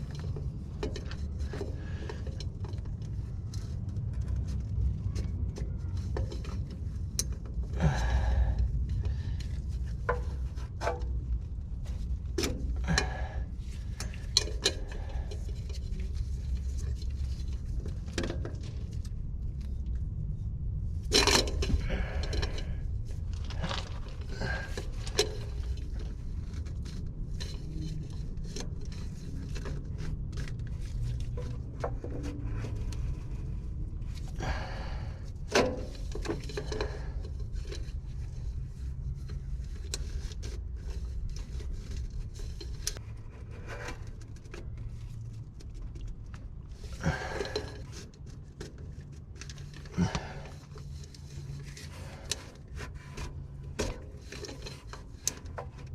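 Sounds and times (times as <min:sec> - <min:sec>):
tools scraping and clinking: 0:00.0 - 0:20.3, 0:20.9 - 0:55.9
low rumble: 0:00.0 - 0:39.9.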